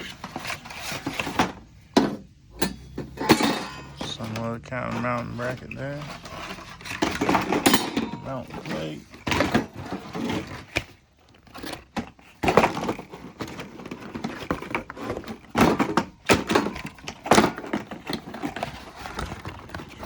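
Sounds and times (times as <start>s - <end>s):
metal parts knocking and clattering: 0.0s - 20.0s
packaging rustling: 4.0s - 20.0s.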